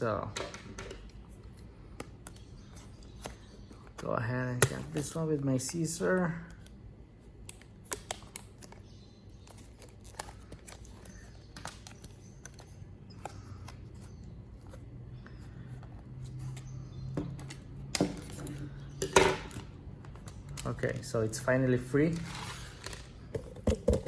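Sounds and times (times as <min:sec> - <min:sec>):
scissors snipping plastic packaging: 0:07.4 - 0:08.8.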